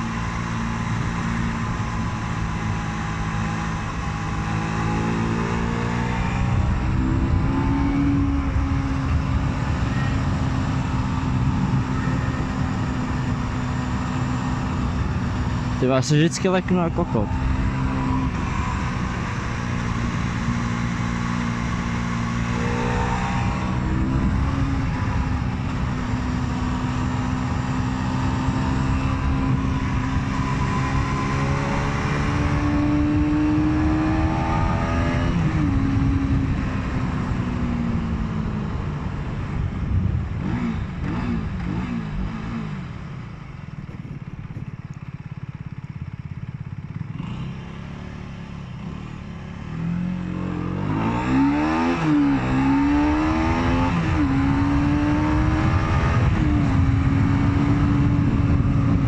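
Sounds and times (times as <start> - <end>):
motorcycle engine running: 0.0 - 51.5, 52.3 - 59.0
wind rush: 3.8 - 15.8, 16.4 - 42.8, 50.9 - 59.0.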